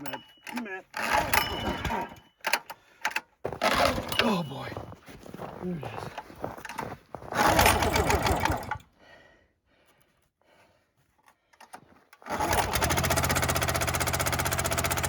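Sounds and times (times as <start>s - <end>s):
small gas engine starting and running: 0.0s - 4.5s, 7.2s - 9.0s, 11.6s - 15.0s.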